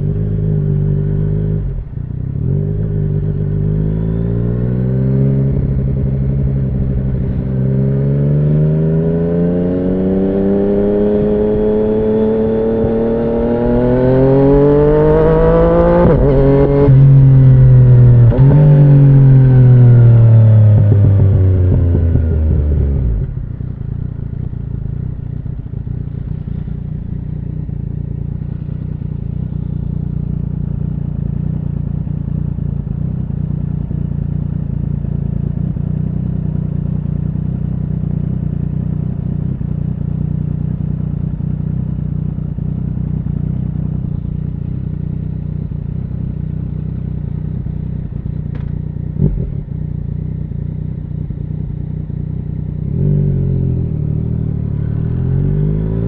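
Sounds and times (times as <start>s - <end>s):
motorcycle engine idling: 19.4s - 55.2s.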